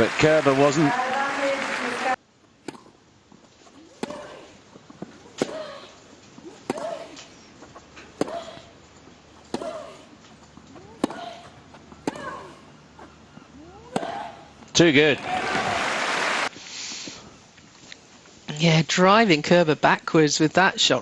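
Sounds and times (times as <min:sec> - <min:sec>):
racket hitting tennis ball: 0:02.6 - 0:03.0, 0:03.9 - 0:05.7, 0:06.5 - 0:07.2, 0:10.9 - 0:12.6, 0:13.8 - 0:14.4.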